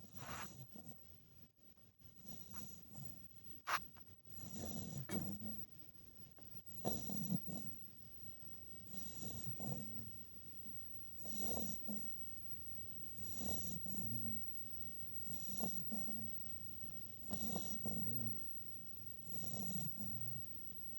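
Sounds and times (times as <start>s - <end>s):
puppy snoring: 0.0s - 1.0s, 2.2s - 5.7s, 6.7s - 7.9s, 8.8s - 10.2s, 11.2s - 12.1s, 13.2s - 14.5s, 15.3s - 16.5s, 17.2s - 18.6s, 19.2s - 20.6s.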